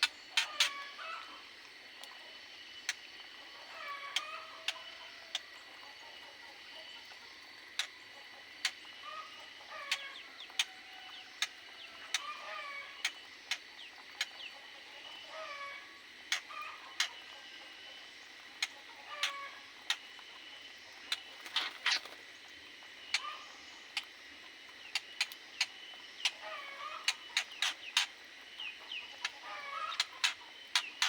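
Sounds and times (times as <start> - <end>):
birds giving short calls: 0.0 - 1.4, 21.1 - 22.2, 24.9 - 31.0.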